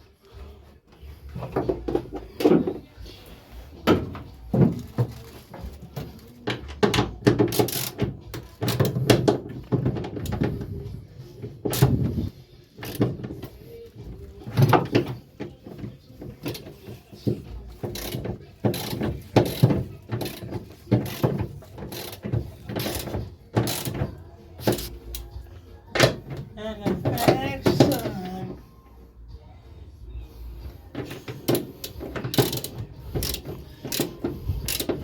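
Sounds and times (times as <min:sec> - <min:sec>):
metallic clicks and clunks: 0:31.0 - 0:35.0.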